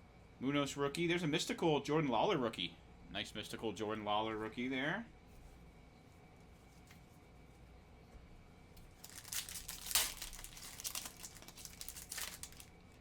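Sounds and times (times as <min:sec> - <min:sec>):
foil wrapper crinkling and tearing: 0:08.8 - 0:13.0.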